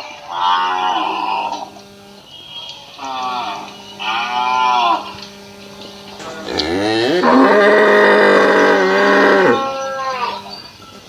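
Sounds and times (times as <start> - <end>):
cow mooing: 3.0 - 5.2, 6.2 - 10.4.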